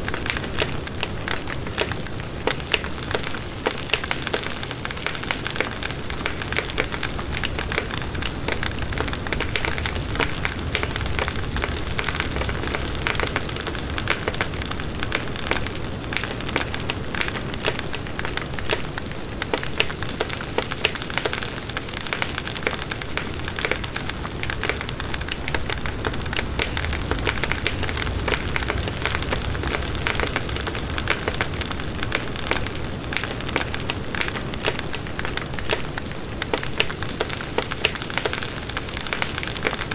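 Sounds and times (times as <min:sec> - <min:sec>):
bonfire crackling: 0:00.0 - 0:39.9
low rush of flame: 0:06.1 - 0:17.3, 0:23.0 - 0:35.6.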